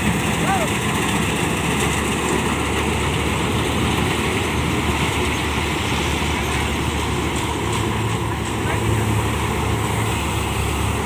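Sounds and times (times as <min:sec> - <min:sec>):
combine harvester running: 0:00.0 - 0:11.0.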